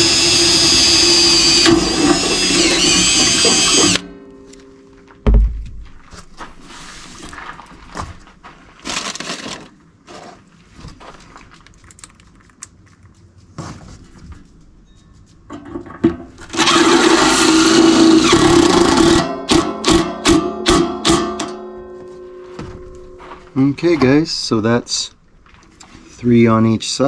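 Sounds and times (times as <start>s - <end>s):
power drill drilling: 0.0s - 4.0s, 16.5s - 19.3s
loud steady humming machine: 0.0s - 4.8s
loud low thump: 5.2s - 6.0s.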